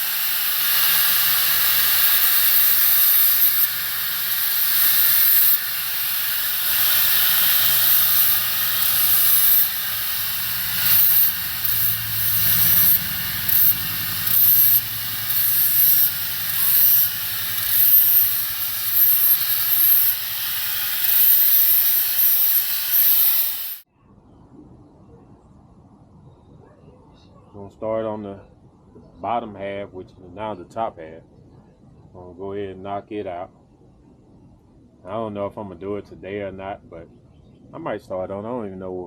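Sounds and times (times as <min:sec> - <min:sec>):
angle grinder grinding metal: 0:00.0 - 0:23.8.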